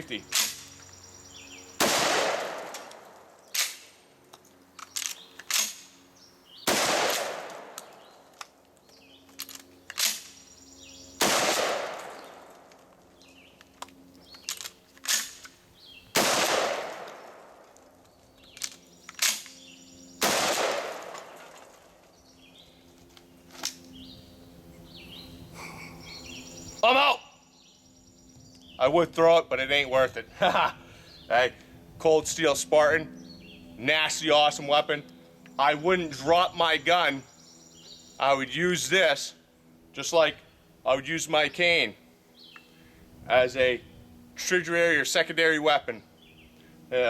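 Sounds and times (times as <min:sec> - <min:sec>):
shotgun blasts with echo: 0:01.8 - 0:03.8, 0:06.6 - 0:07.9, 0:11.2 - 0:12.6, 0:16.1 - 0:17.6, 0:20.2 - 0:21.6.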